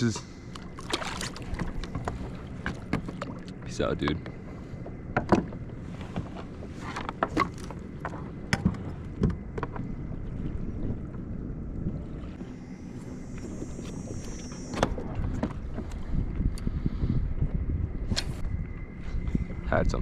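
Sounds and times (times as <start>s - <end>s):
water washing: 0.0s - 4.3s
wind: 0.0s - 20.0s
thin high whir: 12.4s - 15.7s.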